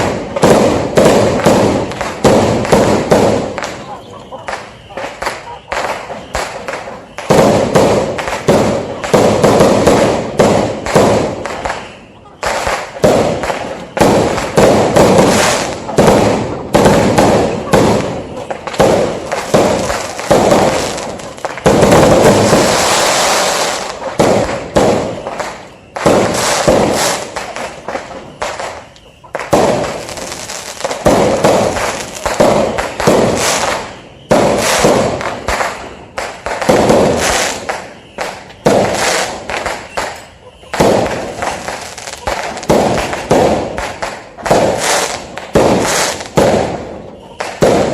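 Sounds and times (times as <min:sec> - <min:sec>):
fireworks exploding: 0:00.0 - 0:47.9.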